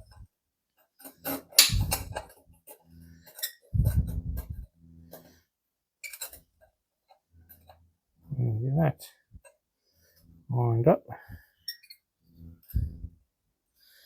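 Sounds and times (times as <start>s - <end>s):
low hum: 1.6s - 2.3s, 3.8s - 4.8s, 12.3s - 13.2s.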